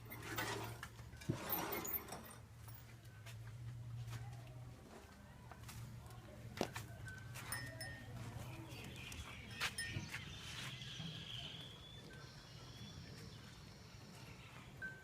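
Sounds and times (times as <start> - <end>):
birds chirping: 7.0 - 15.0.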